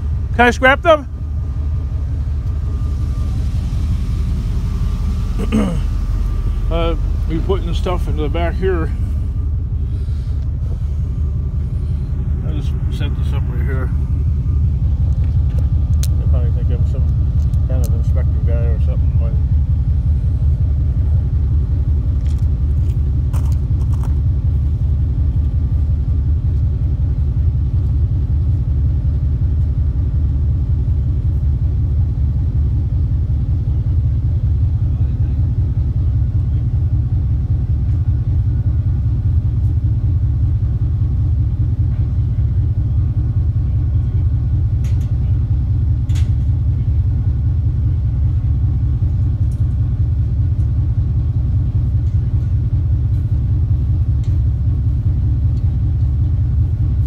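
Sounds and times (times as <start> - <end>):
vehicle road rumble: 0.0 - 57.0.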